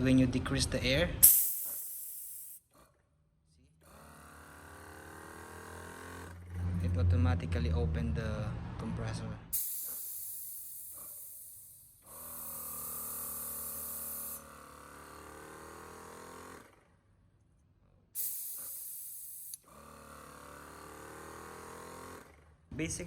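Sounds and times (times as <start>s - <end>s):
air hissing from hose: 1.2s - 2.6s, 9.6s - 14.4s, 18.2s - 19.6s
compressor motor humming: 3.9s - 7.2s, 9.6s - 16.6s.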